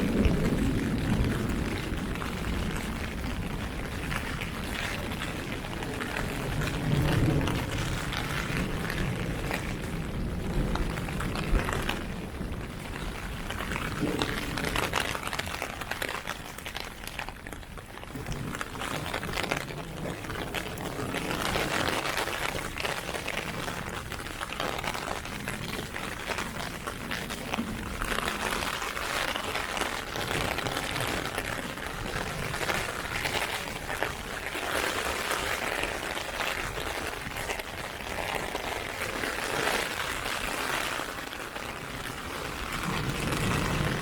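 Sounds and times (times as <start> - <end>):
heavy rain on an umbrella: 0.0 - 44.0.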